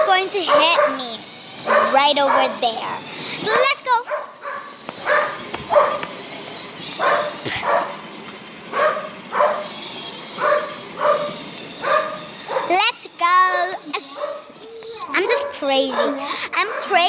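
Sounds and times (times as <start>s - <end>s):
dog barking: 0.0s - 6.2s, 7.0s - 8.0s, 8.7s - 9.7s, 10.4s - 12.9s, 13.5s - 14.5s, 15.2s - 17.0s.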